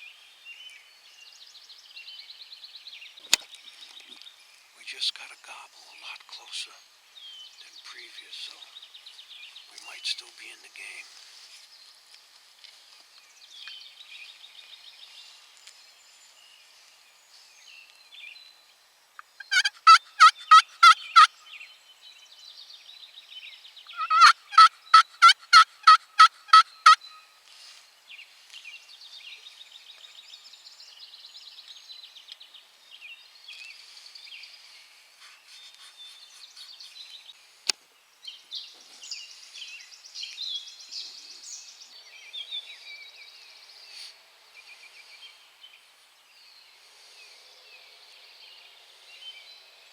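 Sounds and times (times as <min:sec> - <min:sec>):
faint songbird chatter: 0:00.0 - 0:49.9
turkey yelps: 0:19.4 - 0:21.3, 0:24.0 - 0:27.1.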